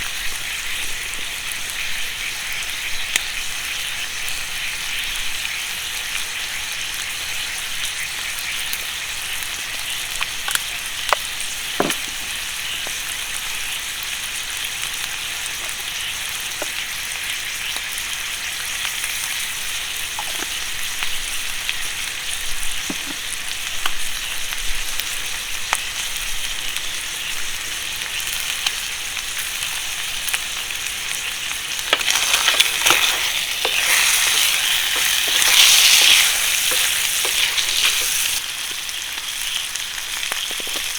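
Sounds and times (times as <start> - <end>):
food sizzling in a pan: 0.0 - 40.9
sharp popping of oil: 11.1 - 13.0, 31.6 - 38.4.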